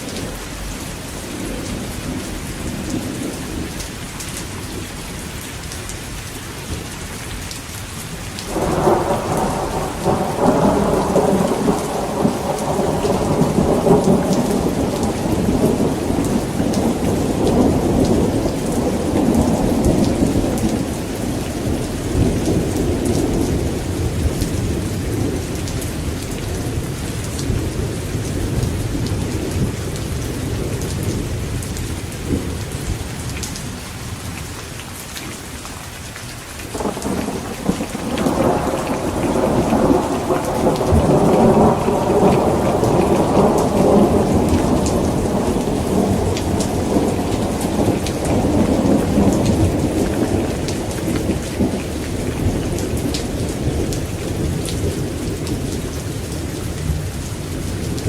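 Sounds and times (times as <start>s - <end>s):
steady rain: 0.0s - 58.0s
rolling thunder: 8.5s - 33.5s, 36.7s - 58.0s.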